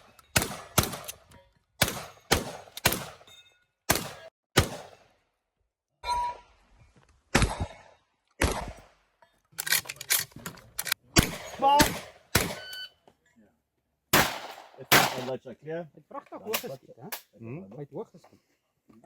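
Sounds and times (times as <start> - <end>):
shotgun shots echoing: 0.3 - 1.2, 1.8 - 3.3, 3.9 - 5.1, 7.3 - 8.9, 11.2 - 12.7, 14.1 - 15.4.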